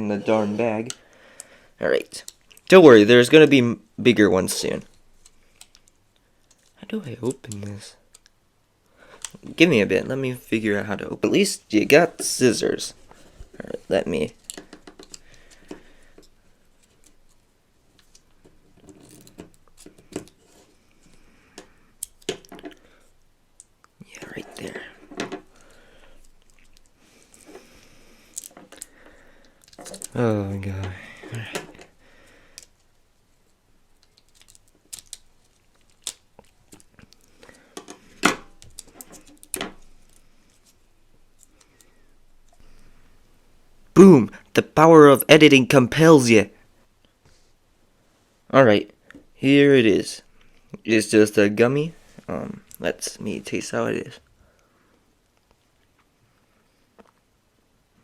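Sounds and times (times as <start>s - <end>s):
plastic wrapper crinkling: 13.0s - 20.4s, 28.2s - 42.6s
scissors cutting plastic wrapper: 34.0s - 37.0s.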